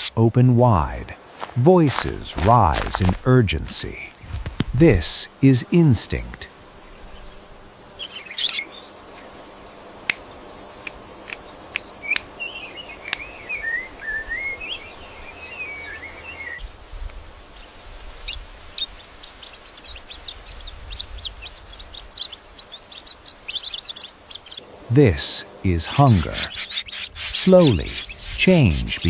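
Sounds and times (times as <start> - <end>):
bird warbled call: 25.4 - 29.0.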